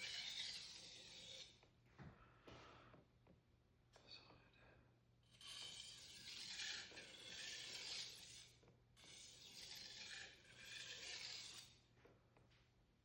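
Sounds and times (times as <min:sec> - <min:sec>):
knife scraping on whetstone: 0:00.0 - 0:01.5, 0:05.5 - 0:11.7.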